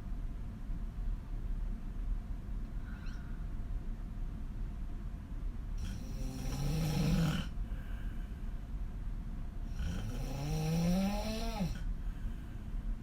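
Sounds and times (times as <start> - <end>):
woman snoring: 5.8 - 7.5, 9.8 - 11.8.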